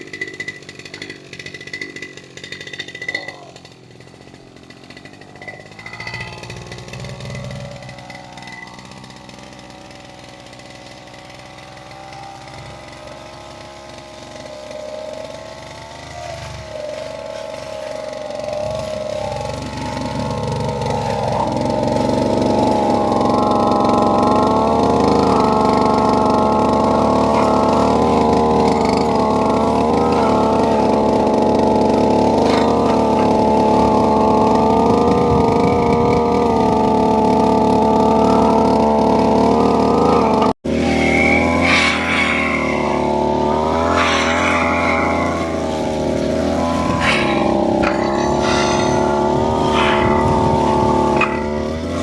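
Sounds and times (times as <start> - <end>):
brush cutter engine running: 0.0 - 52.0.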